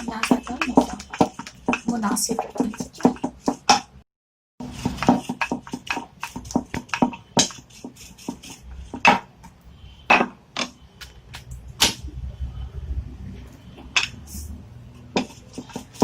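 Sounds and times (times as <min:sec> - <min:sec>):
rolling pin knocking on board: 0:00.0 - 0:03.9, 0:04.8 - 0:09.3.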